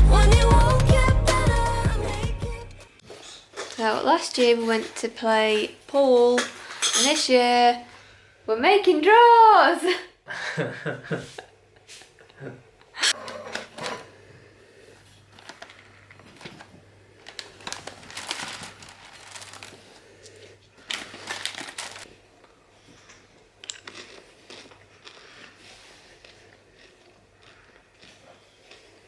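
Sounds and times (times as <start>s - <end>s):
packaging crinkling and rustling: 15.2s - 22.2s.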